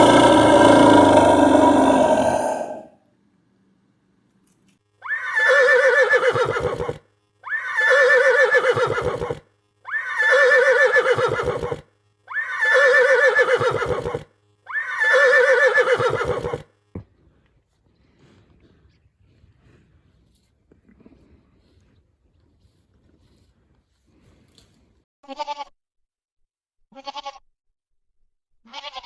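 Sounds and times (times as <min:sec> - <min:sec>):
horse whinnying: 0:05.0 - 0:16.6.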